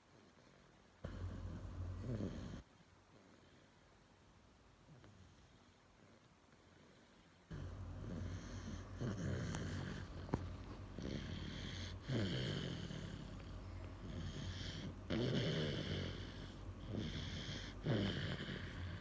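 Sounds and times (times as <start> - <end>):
baby snoring: 1.0 - 2.6, 7.5 - 19.0.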